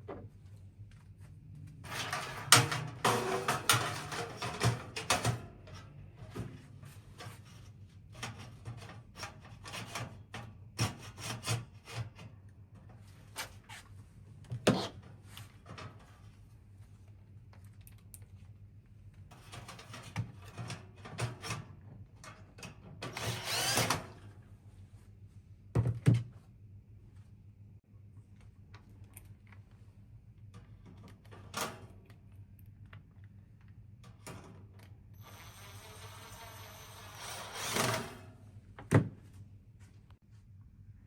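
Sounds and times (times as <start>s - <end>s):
scraping whirr: 23.1s - 24.1s, 35.2s - 38.3s.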